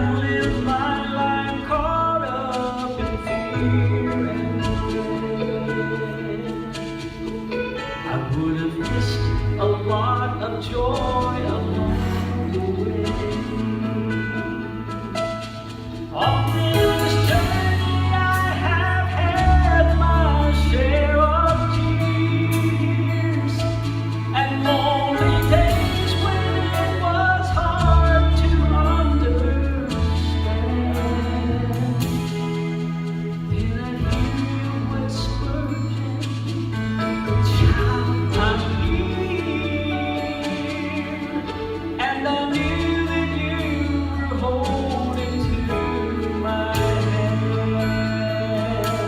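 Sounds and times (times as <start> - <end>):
vocal quartet singing in harmony: 0.0 - 49.0
long held bass notes: 16.2 - 49.0.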